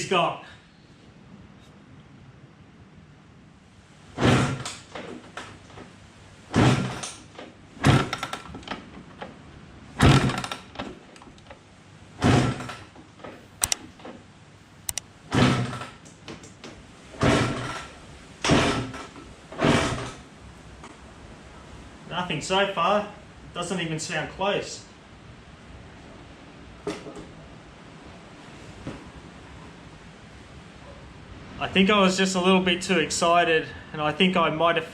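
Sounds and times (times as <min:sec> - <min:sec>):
dirt bike kickstart strokes: 0:06.5 - 0:08.6, 0:10.0 - 0:10.8, 0:17.2 - 0:20.2.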